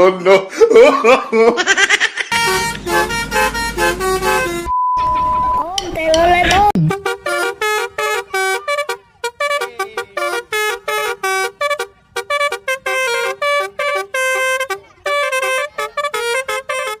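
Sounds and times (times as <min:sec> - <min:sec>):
musical bus horn tooting: 0:02.3 - 0:04.8, 0:06.4 - 0:17.0
sliding horn tone: 0:02.3 - 0:05.3, 0:06.9 - 0:17.0.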